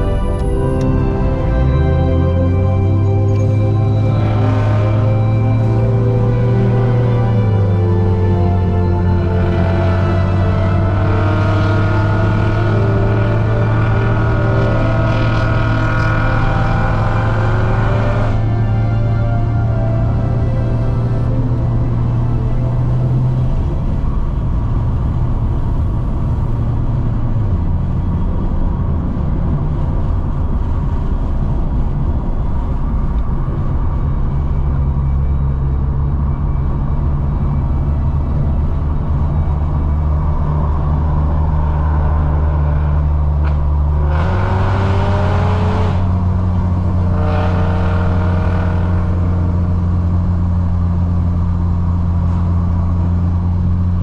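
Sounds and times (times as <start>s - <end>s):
car engine and road noise: 0.0s - 54.0s
engine revving up: 1.5s - 23.5s, 39.9s - 50.5s.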